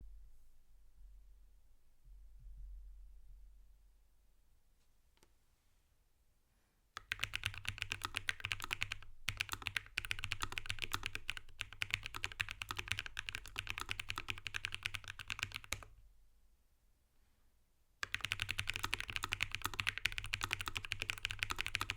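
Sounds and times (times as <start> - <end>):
fast keyboard typing: 7.0 - 15.9, 18.0 - 21.9.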